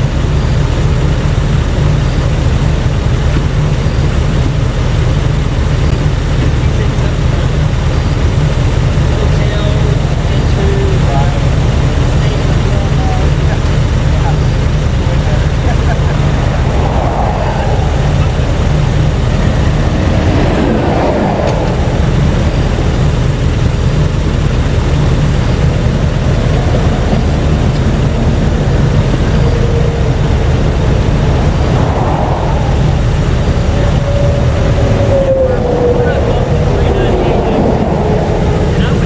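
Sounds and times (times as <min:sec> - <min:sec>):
low rumble of traffic: 0:00.0 - 0:39.0
vehicles swishing past: 0:13.7 - 0:39.0.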